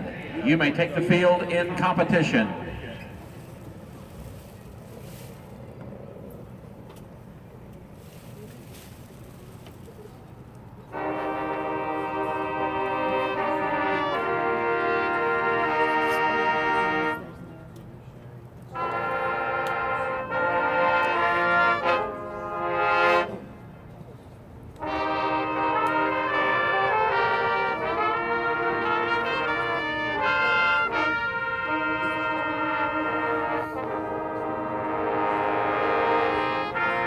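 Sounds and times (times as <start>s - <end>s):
marching band brass chords: 0.0s - 4.3s, 10.9s - 17.3s, 18.7s - 23.8s, 24.8s - 37.0s.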